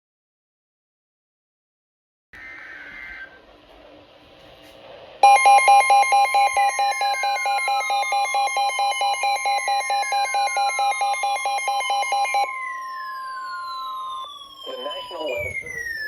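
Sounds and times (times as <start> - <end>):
pulsing electronic alarm beep: 5.2 - 16.0
steady alarm tone: 5.2 - 16.0
falling siren-like whoop: 5.9 - 16.0.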